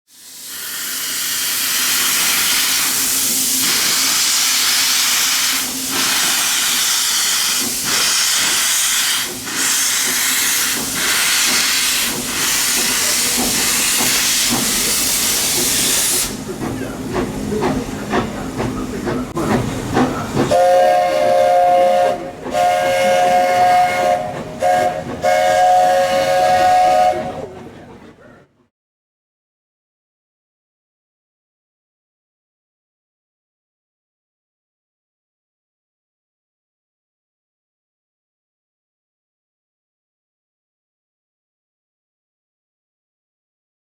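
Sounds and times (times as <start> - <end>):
steam venting hiss: 0.1 - 27.4
locomotive clatter: 9.3 - 20.8
steam whistle blasts: 20.5 - 27.6.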